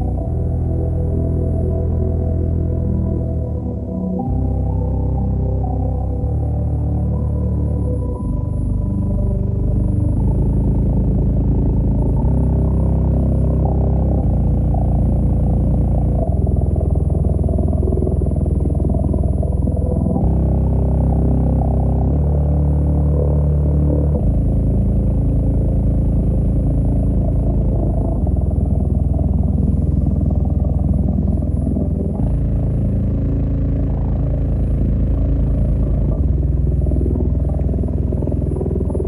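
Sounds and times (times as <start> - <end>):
deep bass notes from subwoofer: 0.0 - 39.0.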